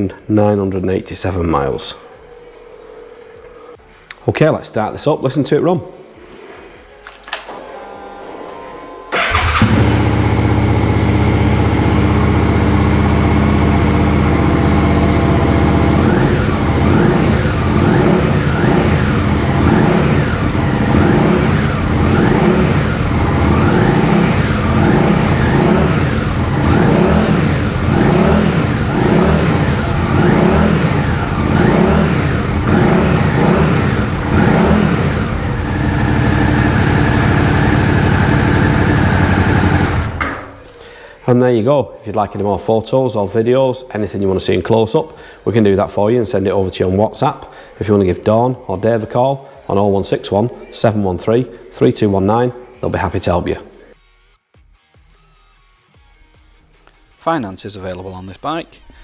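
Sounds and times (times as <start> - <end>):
motorcycle throttle blips: 9.1 - 40.8
motorcycle engine starting and idling: 9.1 - 40.9.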